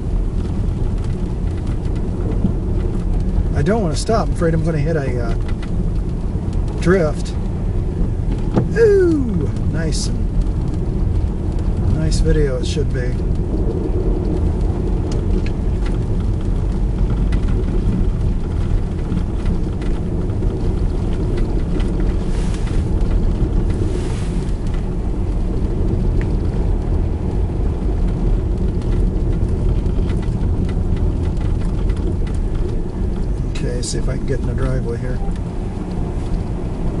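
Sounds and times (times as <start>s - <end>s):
car engine and tyres rumbling: 0.0s - 37.0s.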